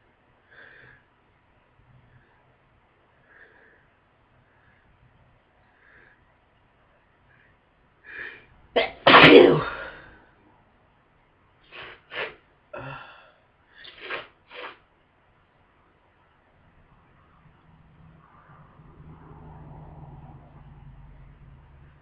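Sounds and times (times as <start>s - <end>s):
person sneezing: 8.8s - 10.1s, 11.7s - 13.2s, 13.8s - 14.8s.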